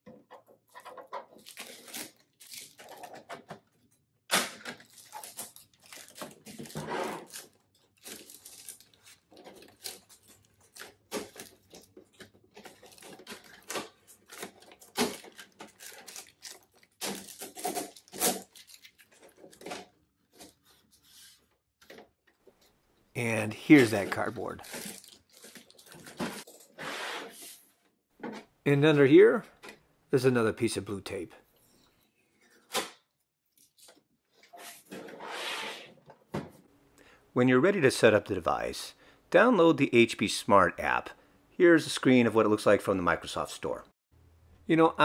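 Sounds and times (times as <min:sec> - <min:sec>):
packing tape being peeled: 0:01.2 - 0:03.2, 0:04.6 - 0:21.4, 0:24.1 - 0:26.8
cardboard pieces rustling: 0:04.6 - 0:21.5, 0:23.7 - 0:26.8.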